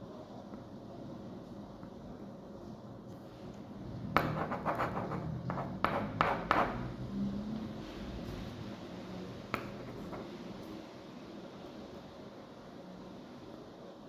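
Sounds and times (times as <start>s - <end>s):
pen scratching on paper: 4.2s - 6.8s.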